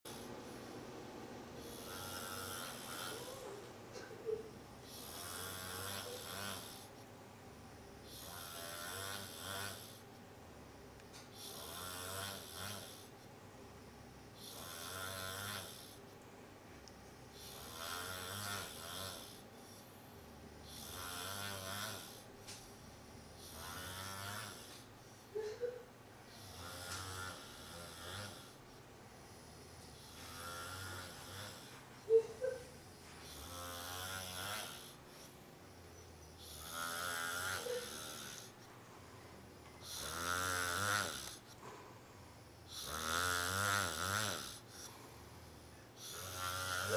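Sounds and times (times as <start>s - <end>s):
man snoring loudly: 1.6s - 3.5s, 4.8s - 6.9s, 8.1s - 10.0s, 11.4s - 13.1s, 14.4s - 16.0s, 17.4s - 19.4s, 20.6s - 22.3s, 23.4s - 24.8s, 26.3s - 28.6s, 29.4s - 31.8s, 33.2s - 35.0s, 36.4s - 38.6s, 39.8s - 41.4s, 42.7s - 44.9s, 45.9s - 46.9s.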